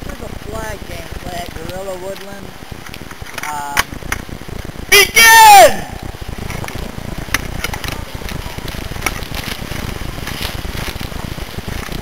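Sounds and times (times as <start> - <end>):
microphone handling rumble: 5.9 - 12.0.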